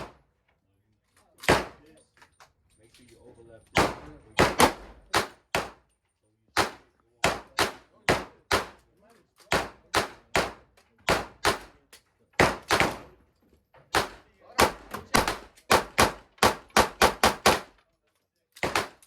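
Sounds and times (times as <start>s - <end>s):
gunshots: 0.0s - 0.2s, 1.4s - 1.9s, 3.7s - 5.8s, 6.6s - 8.8s, 9.5s - 11.8s, 12.4s - 13.2s, 13.9s - 17.8s, 18.6s - 19.0s.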